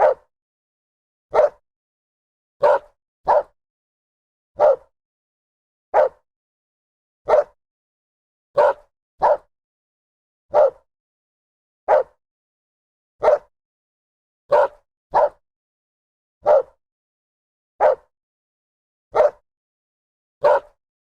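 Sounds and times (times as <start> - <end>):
dog barking: 0.0 - 0.3, 1.3 - 1.6, 2.6 - 3.6, 4.6 - 4.9, 5.9 - 6.2, 7.2 - 7.6, 8.6 - 9.5, 10.5 - 10.9, 11.9 - 12.2, 13.2 - 13.5, 14.5 - 15.4, 16.4 - 16.8, 17.8 - 18.1, 19.1 - 19.4, 20.4 - 20.8.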